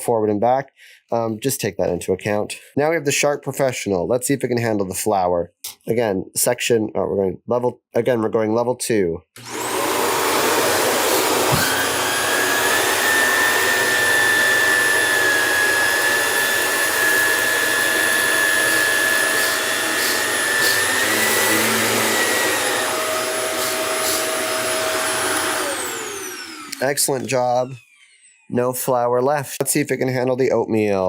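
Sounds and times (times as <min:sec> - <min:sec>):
vacuum cleaner motor whine: 0:09.4 - 0:28.5.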